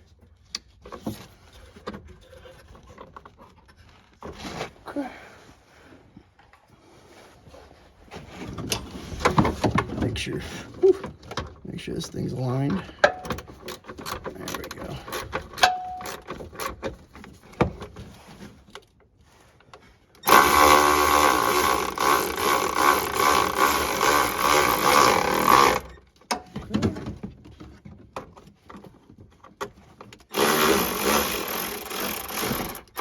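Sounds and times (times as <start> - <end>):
power driver running: 20.3 - 25.9, 30.3 - 33.0.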